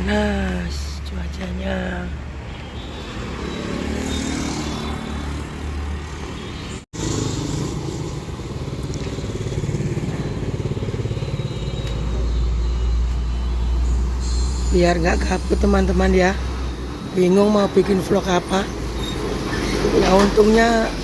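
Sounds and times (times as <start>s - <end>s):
road traffic passing: 0.0s - 21.0s
motorcycle engines passing: 1.7s - 14.2s.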